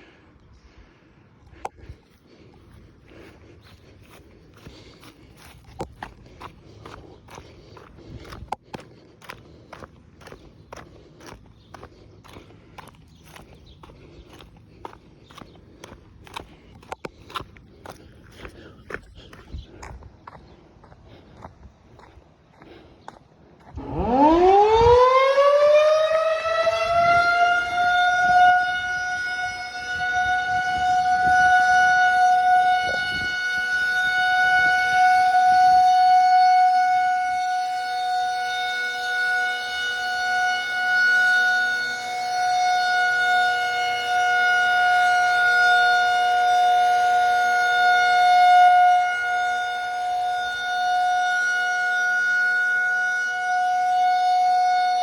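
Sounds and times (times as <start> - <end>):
warning siren winding up: 23.8 - 55.0.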